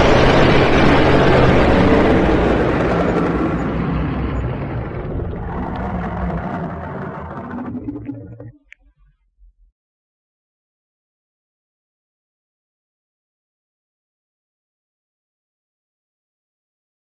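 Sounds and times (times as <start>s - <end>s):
loud rushing noise: 0.0s - 8.6s
low rumble: 0.0s - 9.7s.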